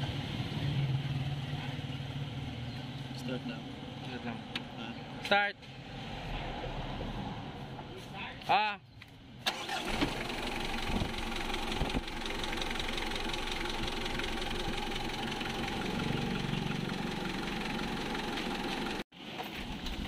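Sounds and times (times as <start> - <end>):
diesel engine starting and idling: 9.4 - 20.0.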